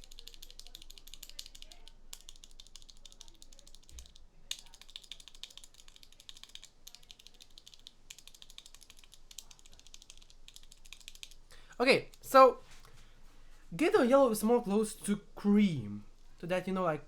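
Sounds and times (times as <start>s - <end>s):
fast keyboard typing: 0.0s - 12.3s.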